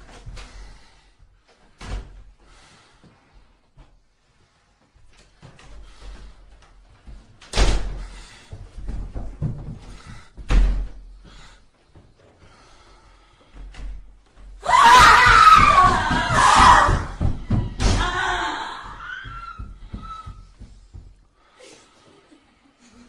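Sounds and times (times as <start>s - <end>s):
faint knocks and thuds: 7.0s - 11.2s, 15.3s - 21.3s.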